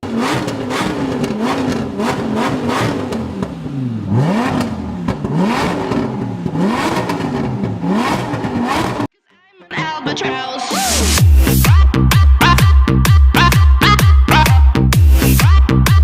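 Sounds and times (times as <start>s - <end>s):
car engine revving: 0.0s - 9.1s
exhaust pops and crackles: 0.0s - 9.1s.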